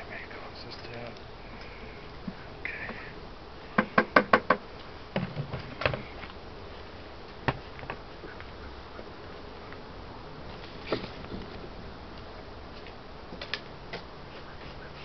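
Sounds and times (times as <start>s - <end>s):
wooden beehive parts knocking: 3.8s - 6.1s, 7.4s - 8.0s.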